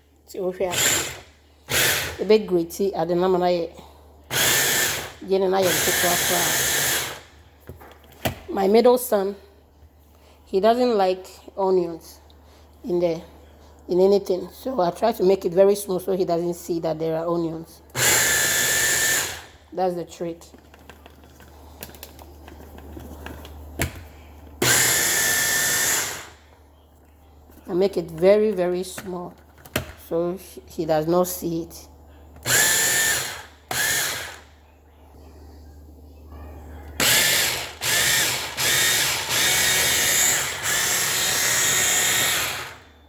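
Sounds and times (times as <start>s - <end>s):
electric blender chopping: 0.7s - 2.2s, 4.3s - 7.2s, 18.0s - 19.5s, 24.6s - 26.3s, 32.4s - 34.4s, 37.0s - 42.8s.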